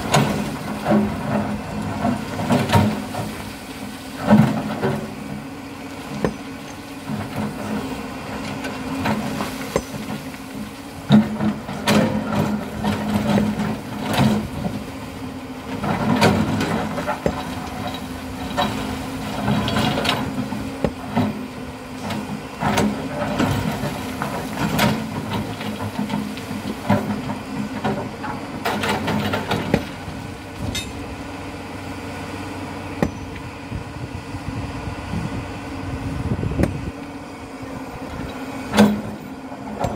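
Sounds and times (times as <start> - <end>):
excavator bucket knocks and clanks: 0.0 - 3.6, 6.1 - 14.9, 15.7 - 31.1, 33.0 - 33.5, 38.1 - 39.9
excavator diesel engine running: 0.0 - 39.9.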